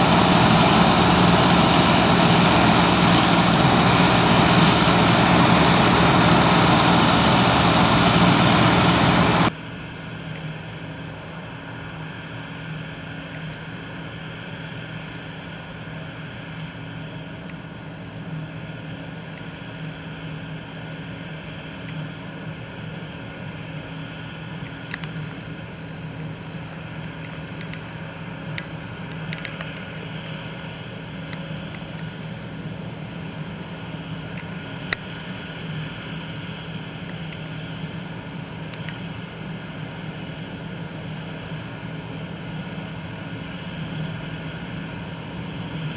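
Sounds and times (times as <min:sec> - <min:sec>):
harvest machinery engines: 0:00.0 - 0:09.5, 0:28.8 - 0:45.9
low drone: 0:00.0 - 0:09.5.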